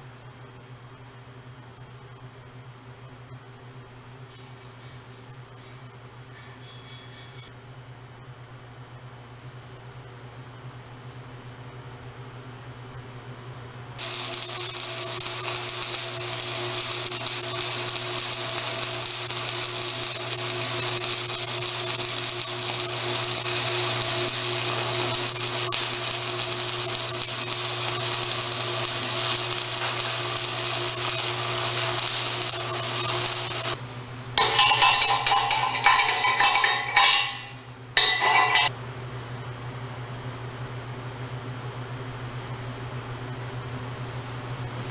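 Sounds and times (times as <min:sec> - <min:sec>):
welding arc crackling hiss: 0:14.0 - 0:33.8, 0:34.4 - 0:38.7.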